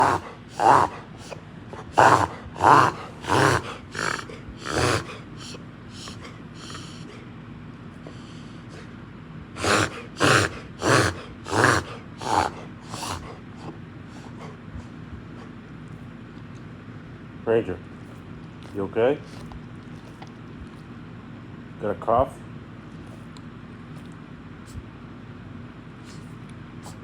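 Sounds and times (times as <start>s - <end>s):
dog coughing harshly: 0.0s - 7.2s, 9.6s - 14.6s.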